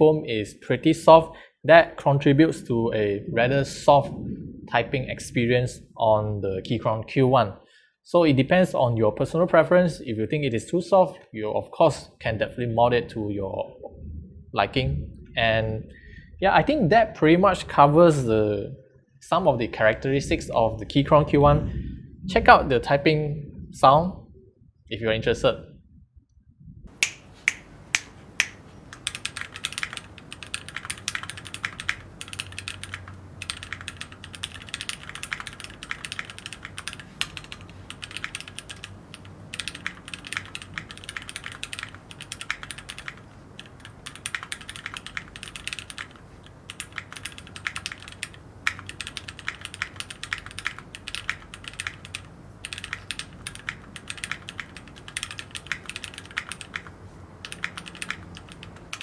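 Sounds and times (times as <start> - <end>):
mechanical keyboard typing: 27.1 - 59.0
key pinging ring: 28.8 - 59.0.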